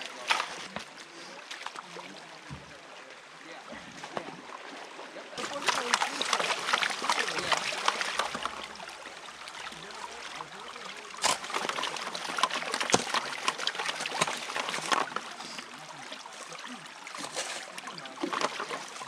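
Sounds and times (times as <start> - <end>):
water trickling and splashing: 0.0 - 19.0
gravel swirled in a pan: 11.2 - 15.7.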